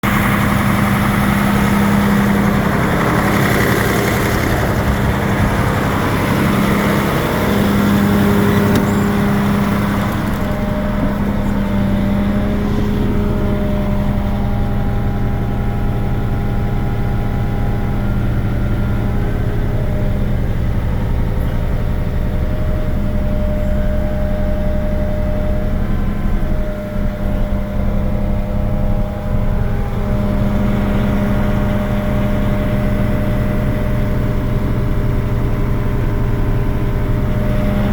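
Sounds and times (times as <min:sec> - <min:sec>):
diesel truck engine running: 0:00.0 - 0:37.9.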